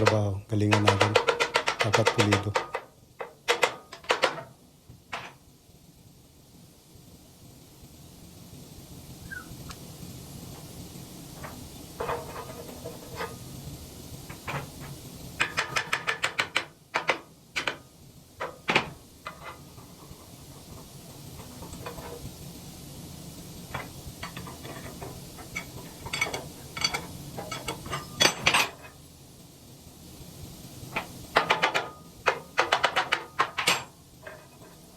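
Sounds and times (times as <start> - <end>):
metal clinks and knocks: 0.0 - 5.4, 11.4 - 13.4, 18.4 - 22.3, 23.7 - 28.9, 31.0 - 34.8.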